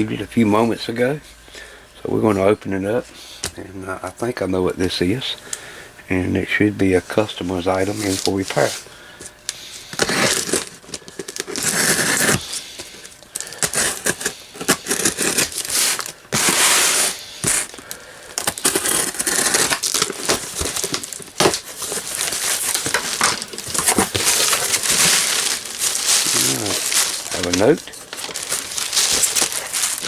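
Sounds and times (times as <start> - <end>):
packing material crinkling: 7.2 - 8.9, 9.5 - 30.0
cardboard rustling and tearing: 7.5 - 8.8, 9.6 - 30.0.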